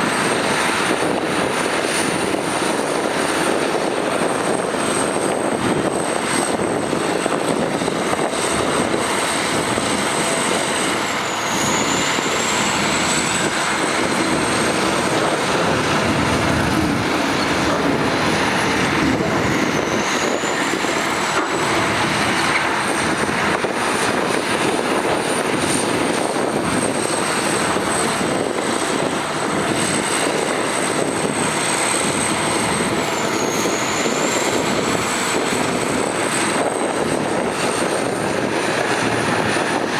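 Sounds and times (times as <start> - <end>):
heavy diesel machinery running: 0.0 - 39.9
thin high whine: 10.1 - 23.0.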